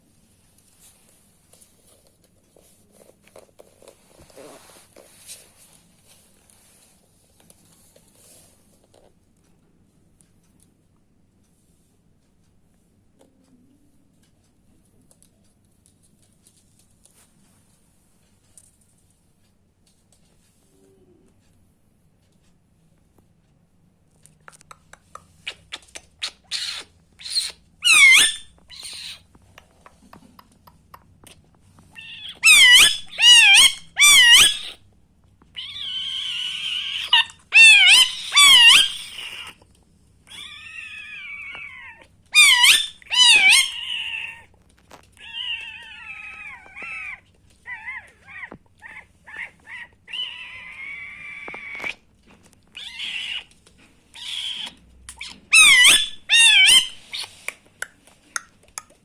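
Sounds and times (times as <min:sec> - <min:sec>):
parakeet warbling chatter and chirps: 0:26.2 - 0:29.2, 0:32.0 - 0:34.7, 0:42.3 - 0:44.1, 0:55.2 - 0:57.3
parakeet shrill screeches: 0:26.5 - 0:29.2, 0:32.0 - 0:34.8, 0:35.6 - 0:39.5, 0:42.3 - 0:44.3, 0:54.2 - 0:57.3.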